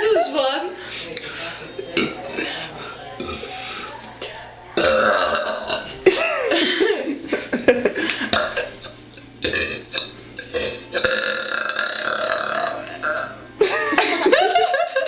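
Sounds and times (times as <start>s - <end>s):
woman burping: 2.0s - 2.5s, 4.8s - 5.9s, 8.3s - 13.4s.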